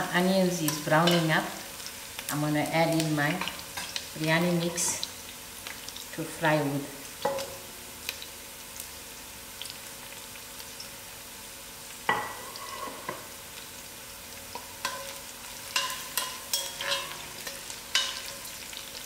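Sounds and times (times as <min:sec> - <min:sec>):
onions sizzling in hot oil: 0:00.0 - 0:19.0
spoon scraping a pot: 0:12.2 - 0:13.2, 0:15.7 - 0:18.5.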